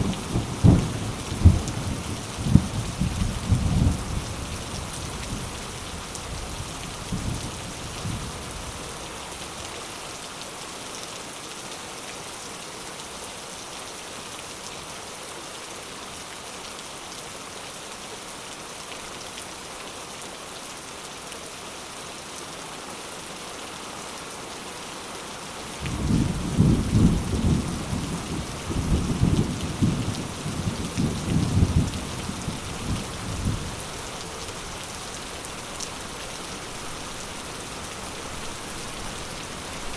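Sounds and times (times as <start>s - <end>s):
thunder rumbling: 0.0s - 4.0s
heavy rain hissing: 0.0s - 10.8s, 25.4s - 39.9s.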